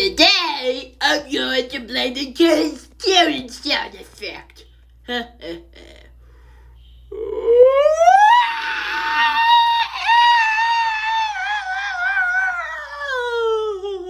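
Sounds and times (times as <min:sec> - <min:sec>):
person screaming: 0:07.2 - 0:13.7.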